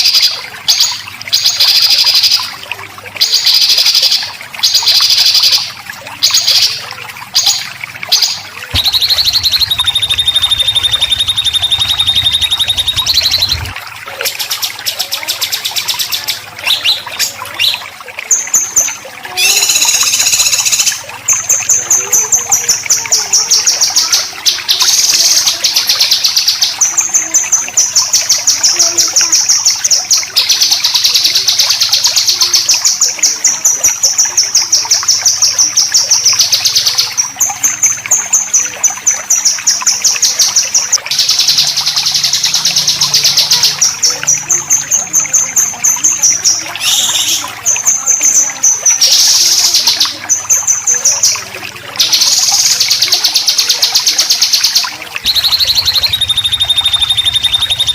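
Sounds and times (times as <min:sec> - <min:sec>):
songbird harsh rasping call: 0:46.8 - 0:47.5.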